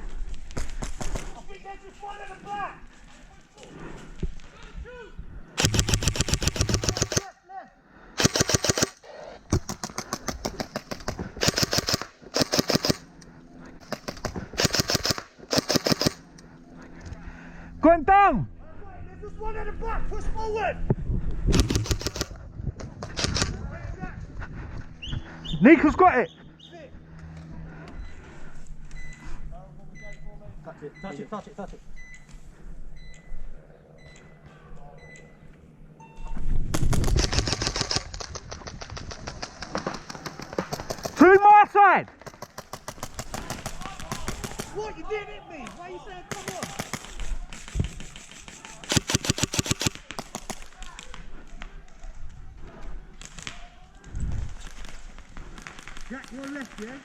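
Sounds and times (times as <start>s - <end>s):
airsoft guns firing bursts: 5.6s - 7.3s, 8.2s - 13.1s, 13.8s - 16.3s, 21.5s - 22.4s, 36.7s - 41.5s, 42.2s - 44.9s, 46.2s - 51.5s, 54.4s - 57.0s
rapid clicks: 5.6s - 7.3s, 8.2s - 16.5s, 21.5s - 22.4s, 36.7s - 41.4s, 42.1s - 44.8s, 46.3s - 50.6s
short electronic beeps: 36.0s - 36.5s.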